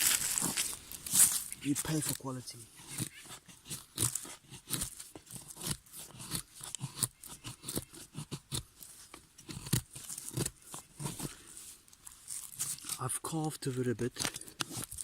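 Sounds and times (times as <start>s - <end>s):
knife cutting into wood: 2.8s - 11.4s, 14.1s - 15.0s.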